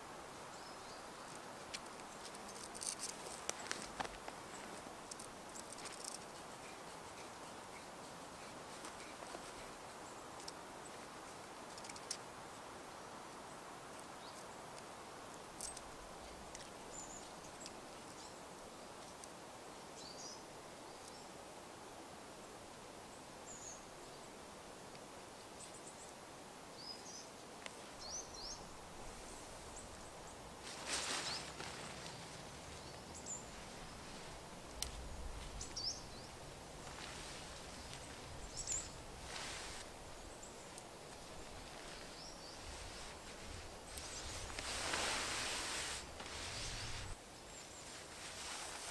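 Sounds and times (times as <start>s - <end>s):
faint background hiss: 0.0s - 48.9s
rustling: 1.2s - 12.2s, 28.6s - 48.9s.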